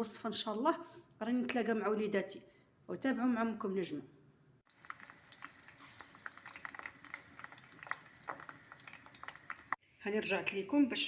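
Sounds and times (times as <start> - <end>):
fat sizzling in a pan: 4.7 - 9.8.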